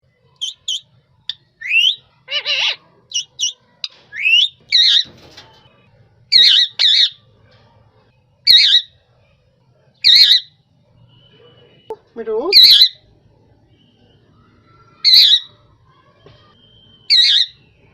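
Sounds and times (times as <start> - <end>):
parakeet squawking: 0.4 - 0.9, 1.6 - 3.6, 6.3 - 7.2, 8.5 - 8.9, 10.0 - 10.5, 12.5 - 13.0, 15.0 - 15.5, 17.1 - 17.6.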